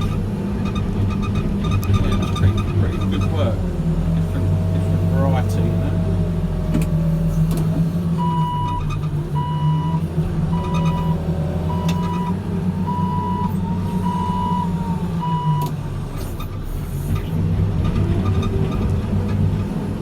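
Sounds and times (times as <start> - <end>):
diesel engine running: 0.0 - 20.0
reversing alarm beeping: 8.2 - 15.7.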